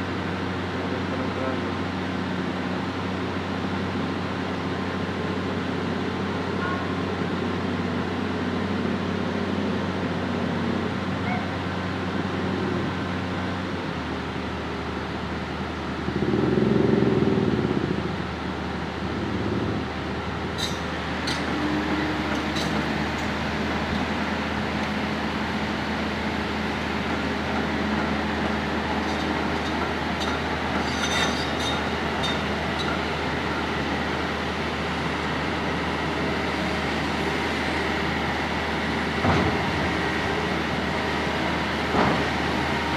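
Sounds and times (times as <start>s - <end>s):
diesel engine humming: 5.2s - 42.9s
high metallic squeals: 20.6s - 21.6s, 29.0s - 33.0s
metallic clanks: 22.3s - 23.4s, 28.9s - 33.0s.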